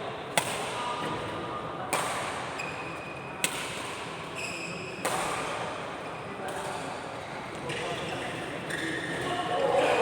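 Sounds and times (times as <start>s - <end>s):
shoe squeaks on court floor: 4.4s - 5.0s.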